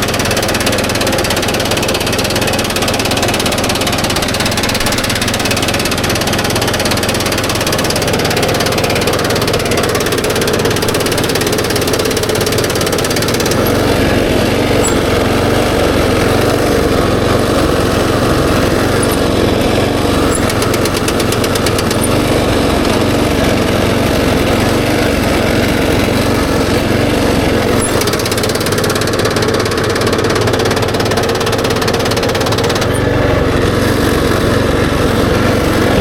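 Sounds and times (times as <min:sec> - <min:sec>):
small engine running: 0:00.0 - 0:36.0.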